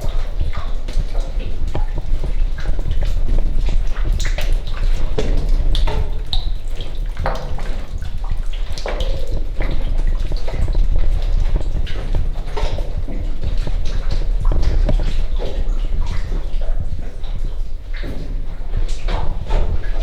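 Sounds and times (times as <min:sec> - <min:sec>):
steady low rumble: 0:00.0 - 0:20.0
water dripping and gurgling: 0:00.0 - 0:20.0.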